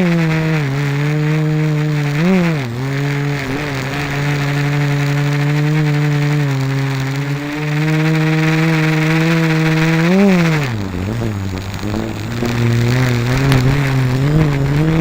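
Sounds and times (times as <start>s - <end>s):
quadcopter motors humming: 0.0s - 15.0s.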